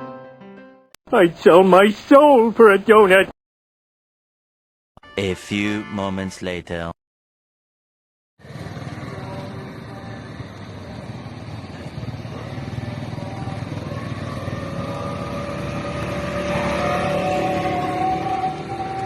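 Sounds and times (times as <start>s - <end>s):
traffic engines running: 8.4s - 19.0s.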